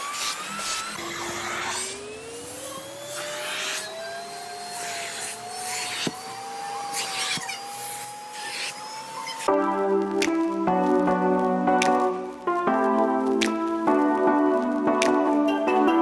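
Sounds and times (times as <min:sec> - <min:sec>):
vacuum cleaner motor whine: 0:00.0 - 0:09.5.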